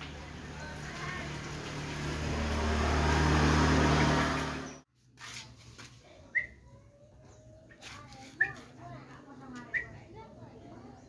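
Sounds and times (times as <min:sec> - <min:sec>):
vehicle engine running: 0:00.0 - 0:04.9.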